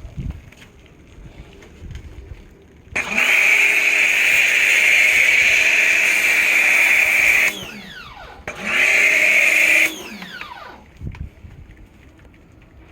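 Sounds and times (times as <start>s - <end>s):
pressure washer motor whining: 3.0s - 11.0s.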